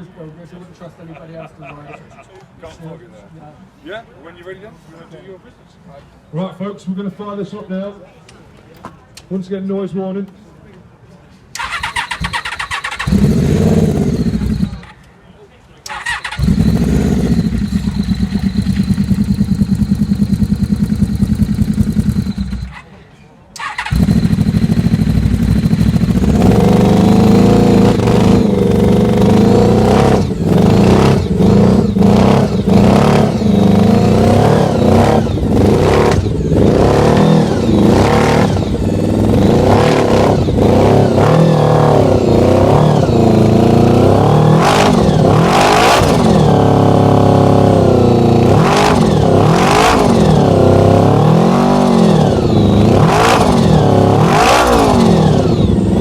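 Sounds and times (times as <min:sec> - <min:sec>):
motorcycle engine idling and revving: 0:11.6 - 0:15.0, 0:15.9 - 0:23.0, 0:23.6 - 0:56.0.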